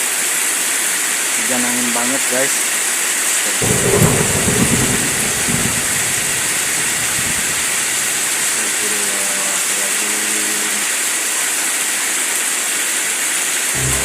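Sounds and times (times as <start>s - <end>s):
heavy rain hiss: 0.0s - 14.0s
wind buffeting microphone: 3.6s - 8.6s.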